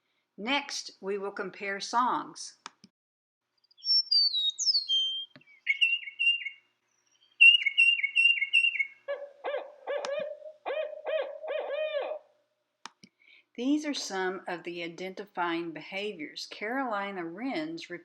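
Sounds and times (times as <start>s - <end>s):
high whistled bird notes: 3.7s - 9.1s
lower bird calls: 3.7s - 12.2s.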